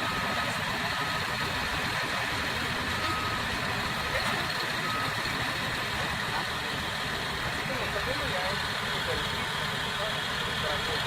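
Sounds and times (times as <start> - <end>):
diesel engine running: 0.0 - 11.0
backup alarm beeps: 2.9 - 5.3.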